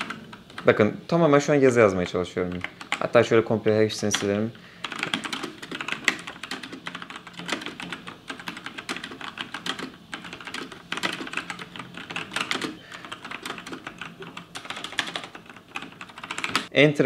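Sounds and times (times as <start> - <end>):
mechanical keyboard typing: 0.0 - 0.8, 2.0 - 3.2, 4.0 - 16.7.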